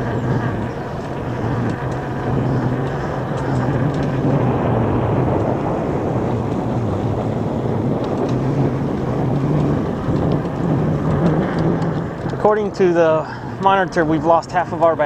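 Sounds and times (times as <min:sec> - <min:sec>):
faint wavering hum: 0:00.0 - 0:15.0
wind rushing over microphone: 0:00.0 - 0:15.0.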